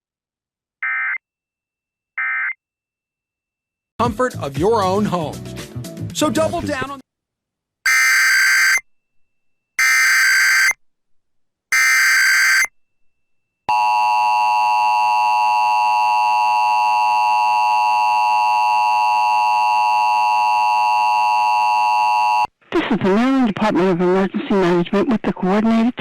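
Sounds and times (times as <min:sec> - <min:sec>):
shrill warbling data bursts: 0:07.9 - 0:08.8, 0:09.8 - 0:10.8, 0:11.7 - 0:12.7
two-tone attention signal: 0:07.9 - 0:08.8, 0:09.8 - 0:10.8, 0:11.8 - 0:12.7.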